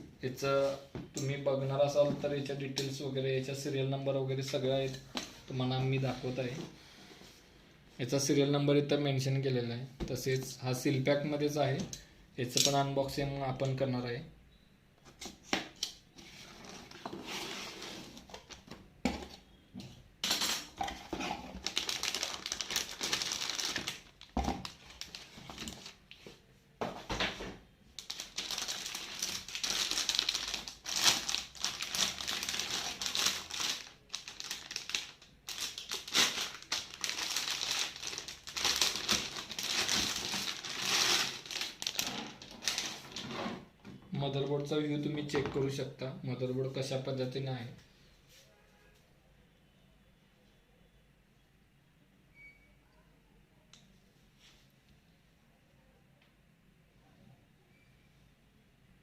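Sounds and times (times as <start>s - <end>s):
packaging crinkling and rustling: 20.2s - 26.2s, 28.0s - 43.3s.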